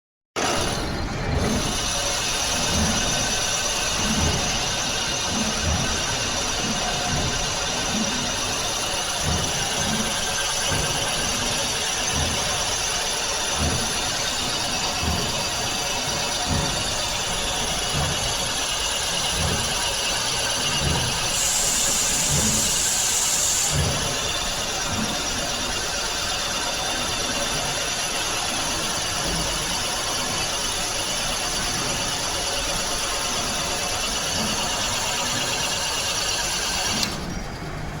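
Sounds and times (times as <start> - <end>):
machine tool high whine: 0.4 - 37.8.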